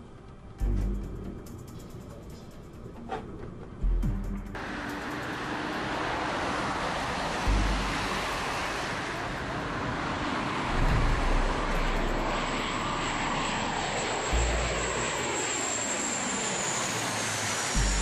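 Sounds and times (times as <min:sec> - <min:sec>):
aircraft engine passing by: 0:04.6 - 0:18.0
high whine sliding down: 0:04.6 - 0:18.0.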